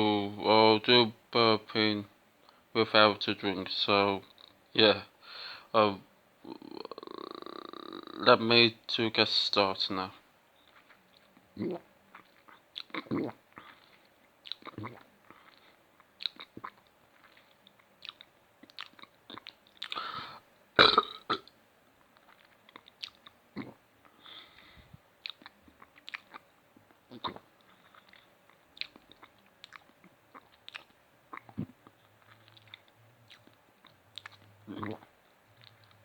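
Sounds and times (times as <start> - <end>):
person burping: 6.4 - 8.3, 13.0 - 13.4, 20.8 - 21.5, 23.6 - 23.8
mouth clicks and gulps: 6.5 - 8.3, 10.7 - 21.5, 22.2 - 24.2, 24.8 - 36.0
breathy intake: 19.9 - 20.4.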